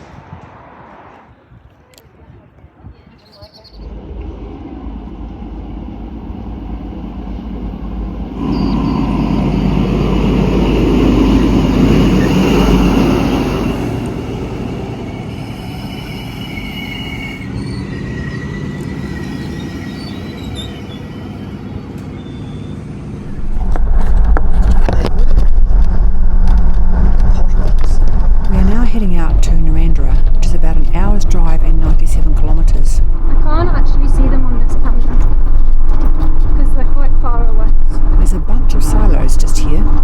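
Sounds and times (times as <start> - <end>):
vehicle rumble: 3.2 - 40.0
high squealing tones: 3.6 - 23.7.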